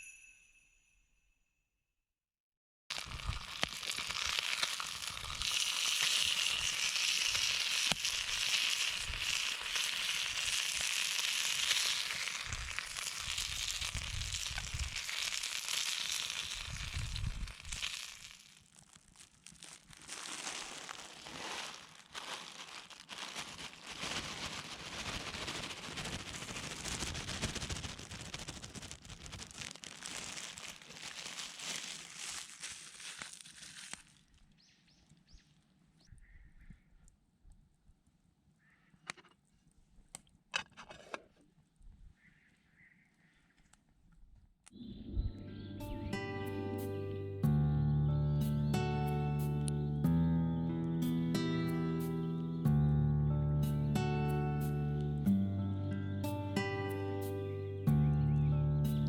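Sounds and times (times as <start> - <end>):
wood fire crackling and popping: 2.9 - 34.0
wind rumbling on microphone: 13.4 - 15.0, 16.5 - 17.8.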